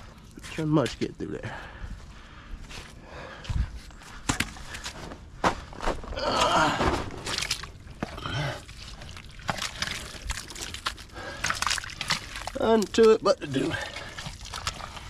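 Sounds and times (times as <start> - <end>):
sloshing in muddy water: 6.0 - 15.0.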